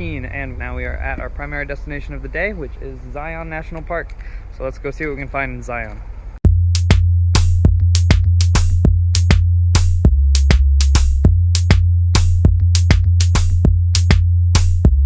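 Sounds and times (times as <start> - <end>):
deep bass: 0.0 - 2.0, 6.4 - 15.0
drum machine hits: 6.4 - 15.0.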